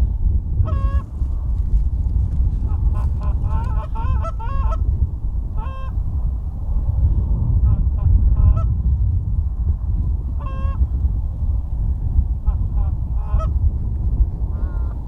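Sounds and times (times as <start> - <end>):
steady low rumble: 0.0 - 15.0
geese honking: 0.7 - 1.0, 2.7 - 4.8, 5.6 - 6.0, 10.4 - 10.8, 12.4 - 13.5, 14.5 - 15.0.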